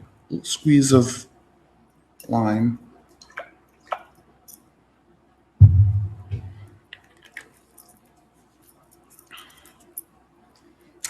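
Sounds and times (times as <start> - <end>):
low rumble: 5.6 - 6.7.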